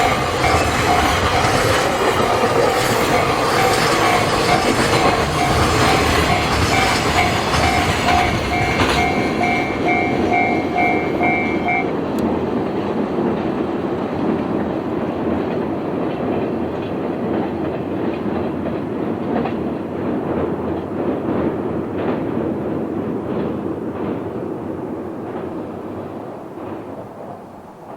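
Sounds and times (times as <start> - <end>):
level crossing warning bell: 0.0 - 12.3
freight train wheels clattering: 0.0 - 27.9
train rumble: 0.0 - 27.9.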